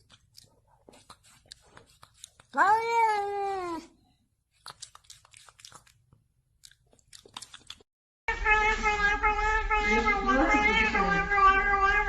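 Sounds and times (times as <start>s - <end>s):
cat meowing: 8.3s - 12.0s.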